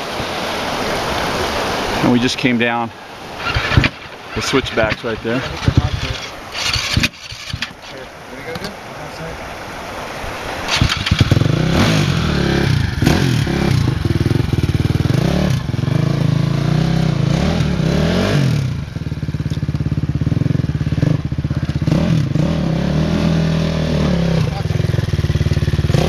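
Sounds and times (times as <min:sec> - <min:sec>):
dirt bike engine revving: 0:03.2 - 0:07.9, 0:10.6 - 0:26.0.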